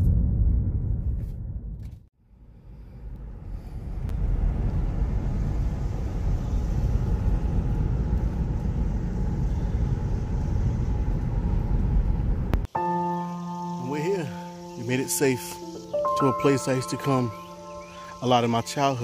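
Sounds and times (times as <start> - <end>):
car road and engine rumble: 0.0 - 12.7.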